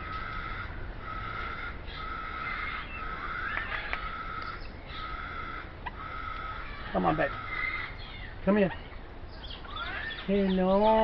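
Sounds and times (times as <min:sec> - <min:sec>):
bird chirps: 0:06.7 - 0:11.0.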